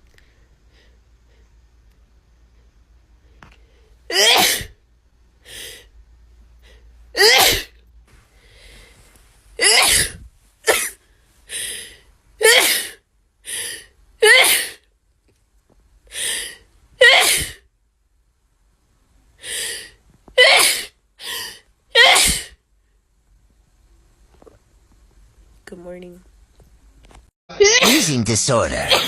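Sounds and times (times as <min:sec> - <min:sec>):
woman sneezing: 0:04.1 - 0:04.7, 0:07.2 - 0:07.7, 0:09.6 - 0:11.0, 0:17.0 - 0:17.6, 0:22.0 - 0:22.6.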